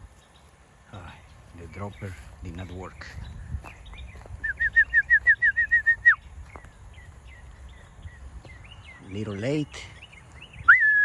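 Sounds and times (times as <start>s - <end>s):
songbird whistled notes: 3.9s - 9.0s, 10.0s - 11.0s.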